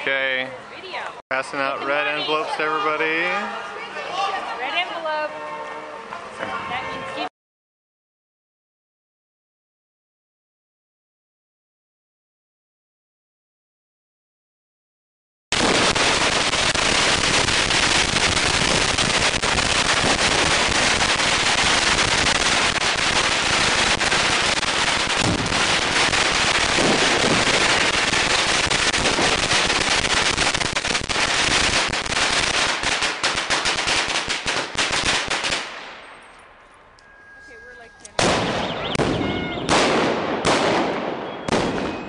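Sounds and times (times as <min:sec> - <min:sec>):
firecrackers crackling: 0:15.5 - 0:36.4, 0:38.0 - 0:42.0.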